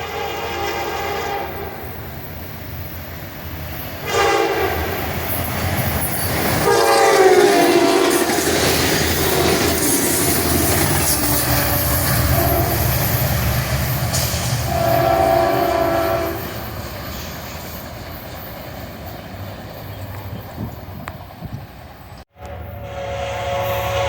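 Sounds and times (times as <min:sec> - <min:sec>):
train horn chord: 0:00.0 - 0:01.8, 0:04.0 - 0:05.0, 0:06.6 - 0:08.3, 0:11.1 - 0:12.9, 0:14.6 - 0:16.7, 0:22.3 - 0:24.0
train rumble and wheel noise: 0:00.0 - 0:24.0.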